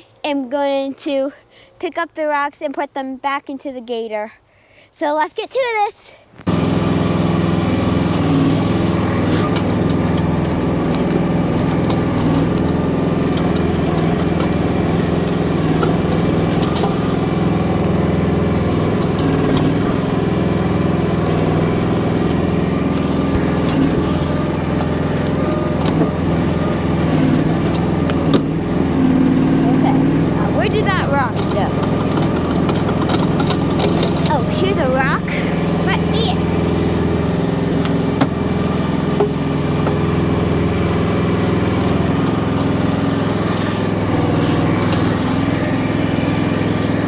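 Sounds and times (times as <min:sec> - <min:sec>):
small excavator engine running: 0:06.4 - 0:47.0
excavator digging rocks: 0:06.5 - 0:47.0
short clanks: 0:07.9 - 0:40.9.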